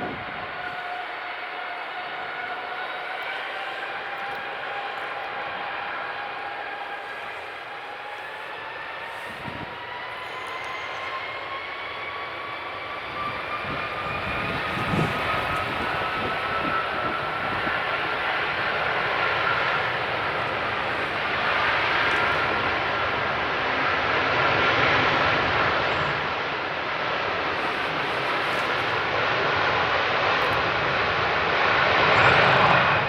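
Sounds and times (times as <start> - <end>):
jet engines at takeoff: 0.0 - 33.0.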